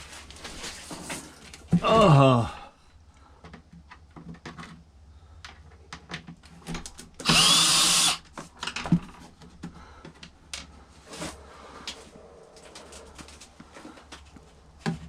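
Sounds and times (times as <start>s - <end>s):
plastic parts clicking and knocking: 3.4s - 7.4s, 8.2s - 10.8s
power drill whining: 7.2s - 8.2s.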